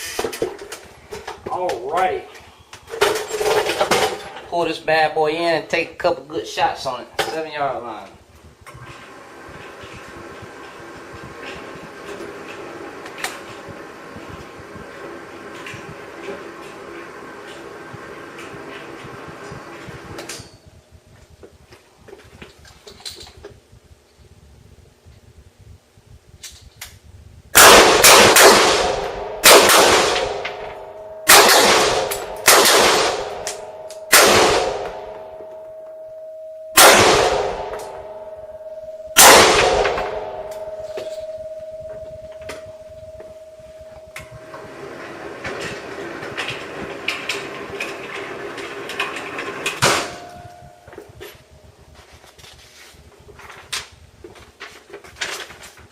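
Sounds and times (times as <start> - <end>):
rifle shots echoing indoors: 27.6 - 36.1, 36.7 - 41.5.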